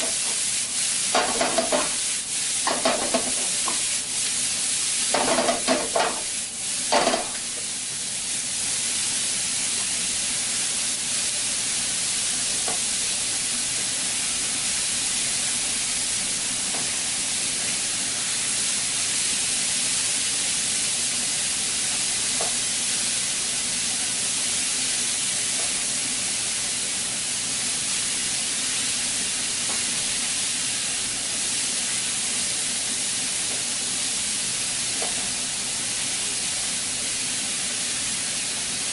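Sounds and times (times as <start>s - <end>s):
stirring in pan: 0.0s - 7.7s
vegetables sizzling in oil: 0.0s - 38.9s.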